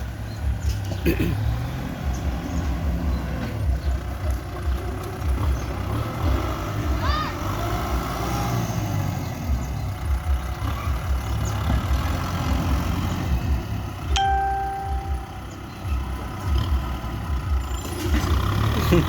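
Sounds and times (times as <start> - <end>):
tractor engine rumbling: 0.0 - 19.0
ringing tone: 14.2 - 15.5.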